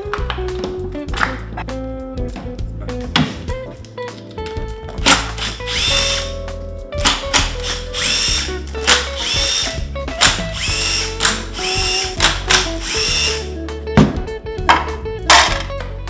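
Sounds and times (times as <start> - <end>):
background music: 0.0 - 16.0
electric screwdriver motor whine: 5.0 - 6.4, 7.0 - 13.5
sharp clicks: 5.0 - 6.4, 7.0 - 13.4.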